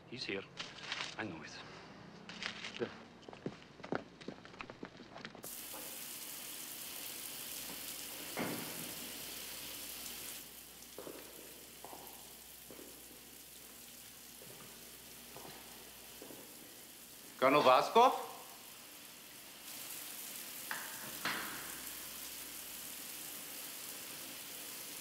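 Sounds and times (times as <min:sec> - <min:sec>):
shower water spraying: 0:05.4 - 0:25.0.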